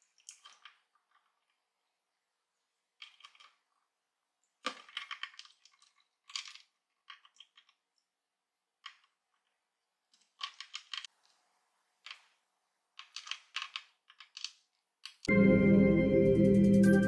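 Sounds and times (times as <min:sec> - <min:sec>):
ice cubes crackling in water: 0:04.6 - 0:07.9.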